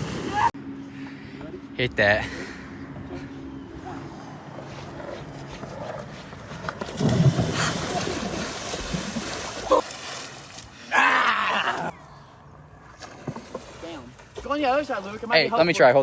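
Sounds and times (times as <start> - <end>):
skateboard splashing through water: 4.6 - 10.8.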